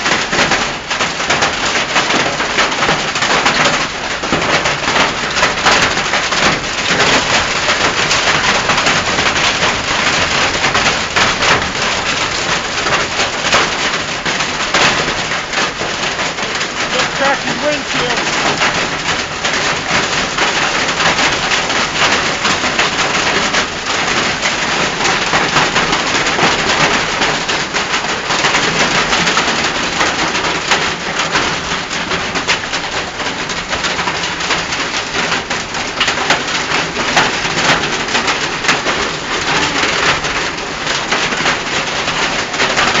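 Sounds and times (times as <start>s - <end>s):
hailstones clattering: 0.0s - 43.0s.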